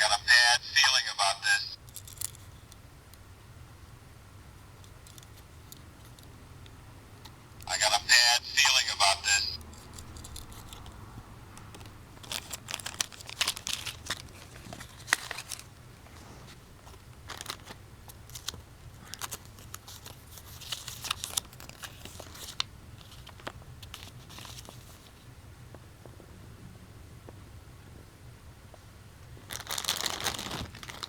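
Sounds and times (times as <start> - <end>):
plastic crinkling and rustling: 12.2 - 15.7, 16.8 - 25.1, 29.4 - 31.0.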